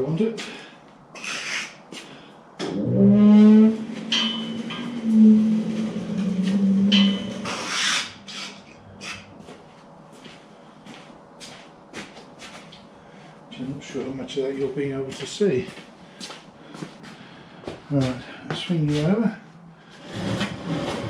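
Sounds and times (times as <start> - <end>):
heavy lathe wheels squealing: 2.7 - 9.4.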